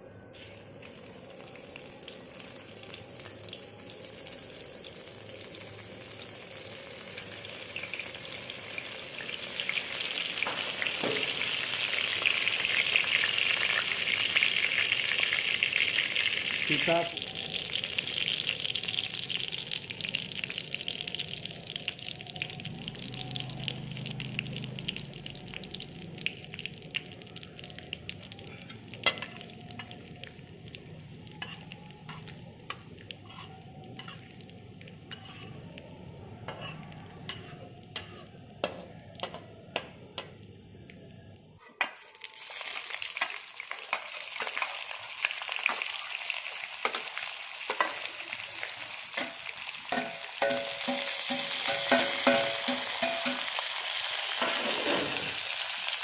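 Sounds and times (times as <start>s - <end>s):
food sizzling in hot oil: 0.3s - 40.8s, 41.8s - 56.0s
spoon scraping a pan: 31.3s - 34.4s, 35.1s - 35.7s, 36.4s - 39.4s, 49.2s - 53.6s, 54.4s - 55.4s.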